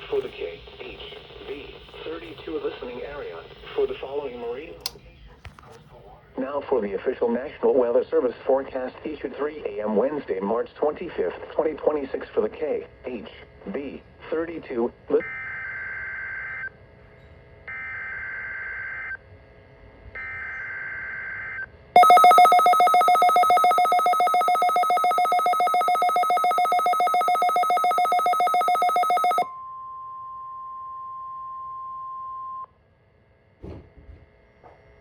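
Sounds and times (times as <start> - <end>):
warbling data tones: 22.0 - 29.4
rapidly pulsing electronic alarm: 22.0 - 29.5
steady warning alarm tone: 22.0 - 29.5.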